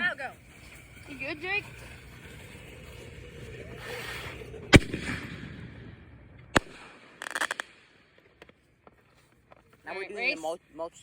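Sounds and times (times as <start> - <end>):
firework hiss: 0.0 - 5.9, 6.5 - 8.0
firework bangs: 4.7 - 8.6.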